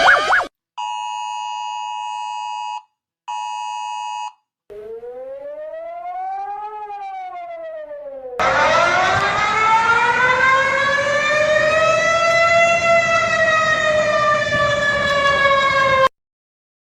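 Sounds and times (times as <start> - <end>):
siren wailing: 0.0 - 0.5, 4.7 - 16.1.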